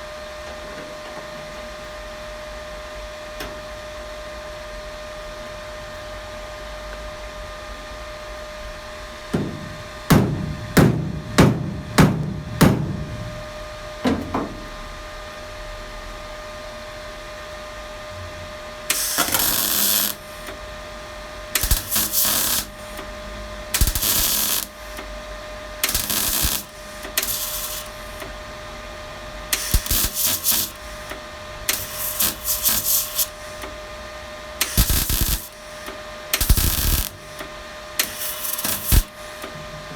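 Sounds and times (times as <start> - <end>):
welder bursts: 9.3 - 13.5, 18.9 - 20.6, 21.5 - 25.2, 25.8 - 28.4, 29.5 - 33.8, 34.6 - 39.6
hammer blows on sheet steel: 9.4 - 13.4.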